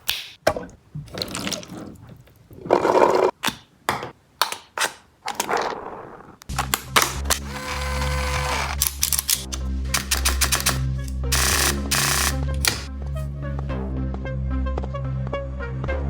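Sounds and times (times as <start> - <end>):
plastic toy gun clicking and rattling: 6.4 - 12.9
background music with low bass: 6.5 - 16.0.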